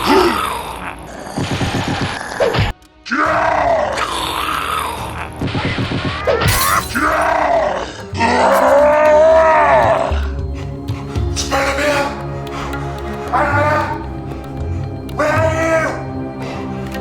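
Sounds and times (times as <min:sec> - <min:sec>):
action music: 0:01.0 - 0:17.0
sharp crash: 0:06.5 - 0:07.5.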